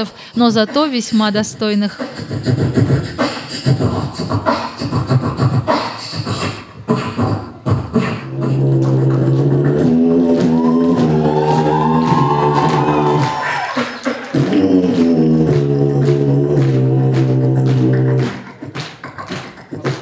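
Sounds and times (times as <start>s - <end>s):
beatboxing hummed bass: 0.0s - 20.0s.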